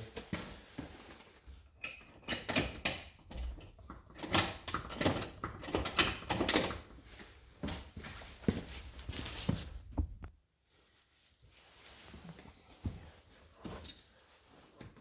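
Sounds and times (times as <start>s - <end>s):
tools knocking and scraping metal: 1.8s - 6.8s.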